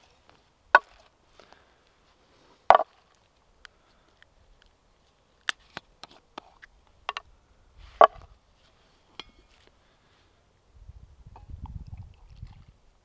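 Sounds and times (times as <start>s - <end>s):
firewood being chopped: 0.7s - 1.6s, 2.7s - 3.0s, 8.0s - 8.3s.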